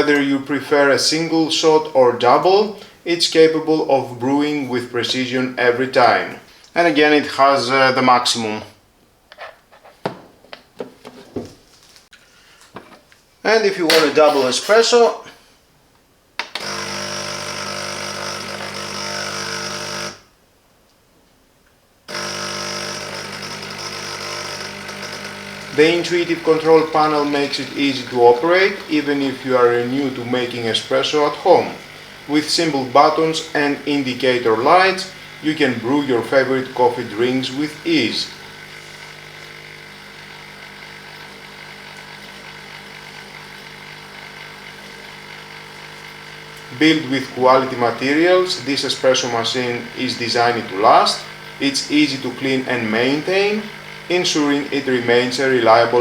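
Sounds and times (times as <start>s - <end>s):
espresso machine pump buzzing: 4.6s - 6.5s, 13.9s - 15.2s, 16.5s - 20.2s, 22.1s - 56.0s.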